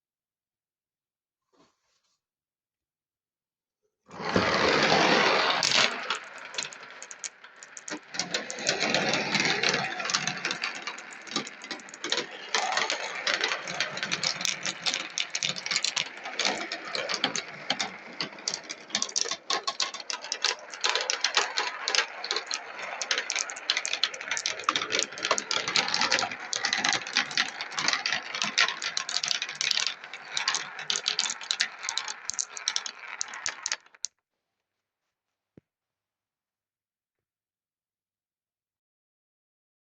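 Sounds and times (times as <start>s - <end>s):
marbles clattering down a marble run: 4.1s - 34.1s.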